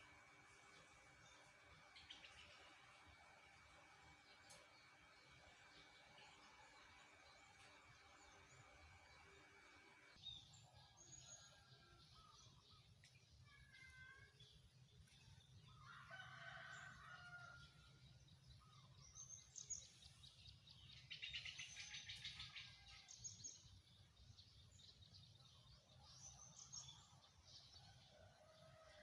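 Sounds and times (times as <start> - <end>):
low steady hum: 0.0 - 11.1
faint birdsong: 0.0 - 29.0
rooster crowing: 15.8 - 17.6.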